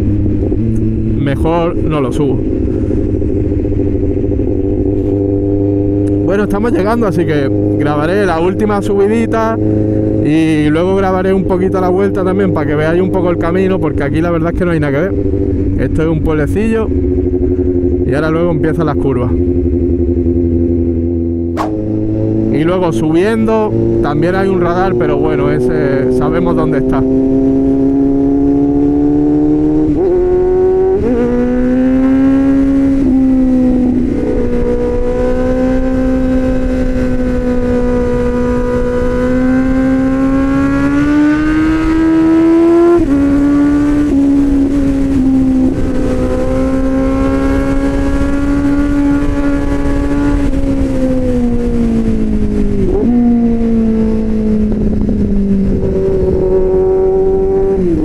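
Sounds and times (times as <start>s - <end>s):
motorcycle engine revving: 0.0s - 58.0s
wind rumble on microphone: 0.0s - 58.0s.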